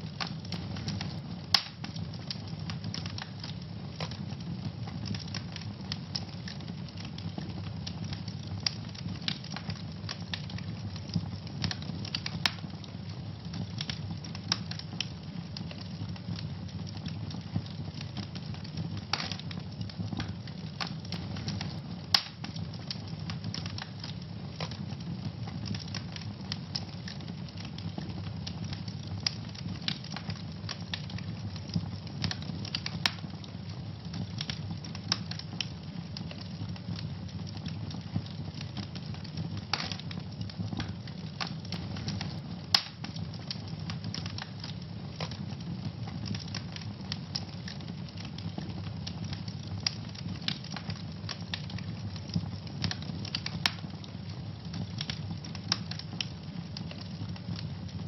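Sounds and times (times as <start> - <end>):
wood fire crackling: 0.0 - 58.0.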